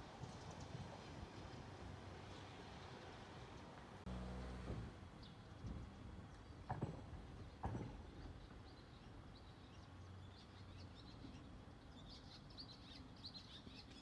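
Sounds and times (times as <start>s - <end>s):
small birds chirping: 8.2s - 14.0s.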